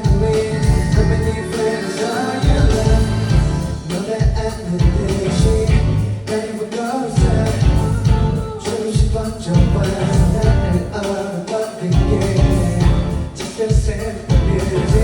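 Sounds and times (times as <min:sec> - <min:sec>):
heavy pulsing bass beat: 0:00.0 - 0:01.5, 0:02.4 - 0:06.2, 0:07.2 - 0:08.6, 0:09.6 - 0:11.0, 0:12.0 - 0:13.4, 0:14.3 - 0:15.0
man singing pop song: 0:00.0 - 0:15.0.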